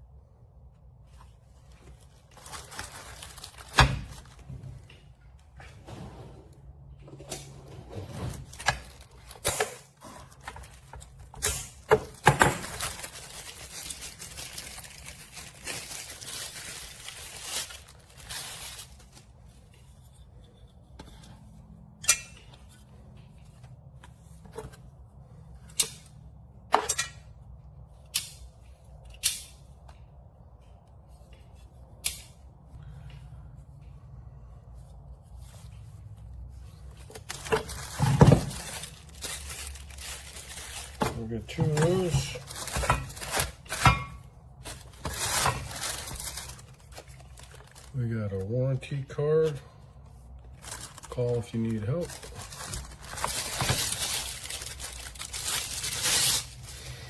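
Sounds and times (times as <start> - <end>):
packaging rustling and tearing: 1.6 - 4.5, 8.3 - 19.6, 36.6 - 48.0, 50.2 - 57.0.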